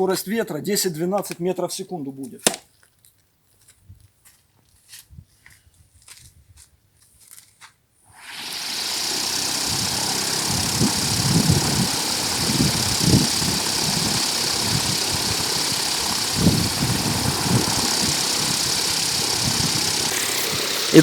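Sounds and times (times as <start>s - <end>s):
blower motor running: 8.1s - 21.0s
loud rush of air: 8.9s - 21.0s
wind buffeting microphone: 9.6s - 21.0s.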